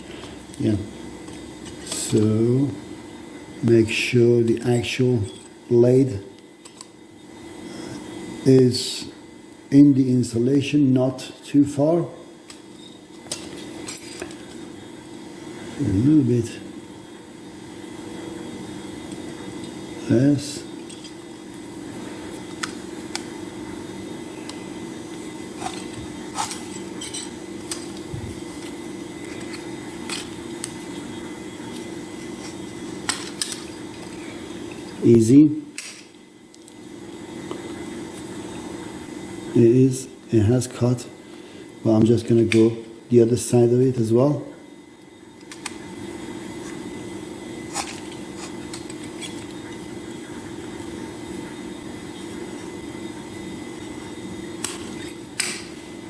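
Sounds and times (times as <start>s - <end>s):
wire stripper scoring cable insulation: 0.0s - 2.7s, 24.4s - 35.2s
steady low hum: 0.0s - 56.0s.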